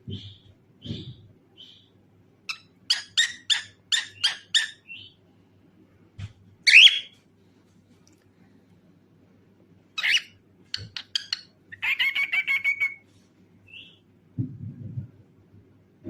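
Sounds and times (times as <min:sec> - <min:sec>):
cockatiel chirping: 0:02.5 - 0:05.1, 0:06.7 - 0:07.1, 0:10.0 - 0:13.0.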